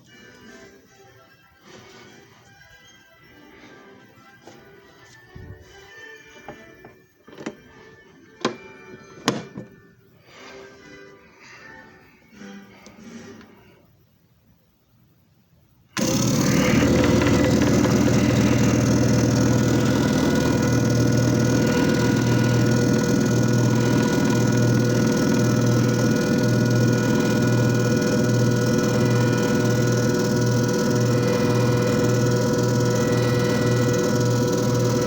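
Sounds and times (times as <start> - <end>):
machine motor humming and whining: 16.0 - 35.0.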